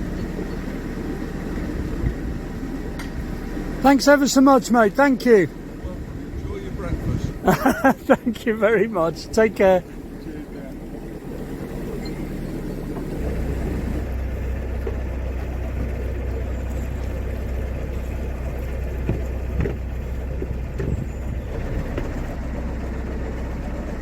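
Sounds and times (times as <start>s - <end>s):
boat diesel engine droning: 0.0s - 24.0s
faint knocks: 19.0s - 22.3s.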